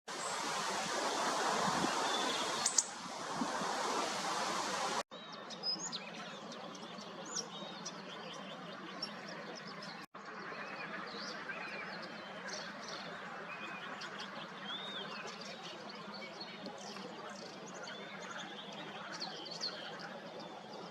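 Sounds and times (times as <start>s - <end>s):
outdoor background noise: 0.1s - 20.9s
wild birds chirping: 1.2s - 3.0s.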